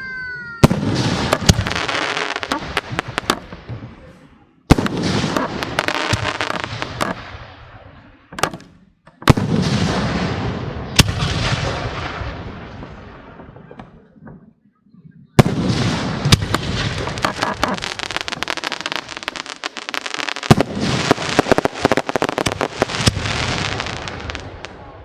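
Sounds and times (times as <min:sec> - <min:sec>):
firework shells bursting: 0:00.6 - 0:04.0, 0:04.7 - 0:09.9, 0:15.4 - 0:24.8
crackling hiss of fireworks: 0:00.6 - 0:07.8, 0:15.4 - 0:25.0.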